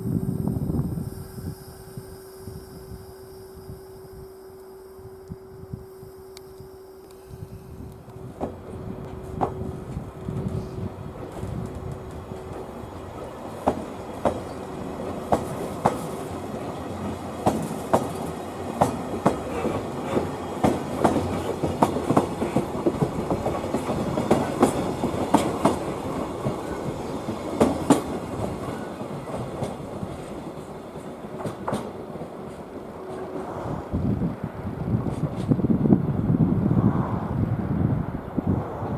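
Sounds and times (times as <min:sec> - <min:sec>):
train rumbling past: 0:00.0 - 0:38.9
wheels clacking over rail joints: 0:08.1 - 0:33.6.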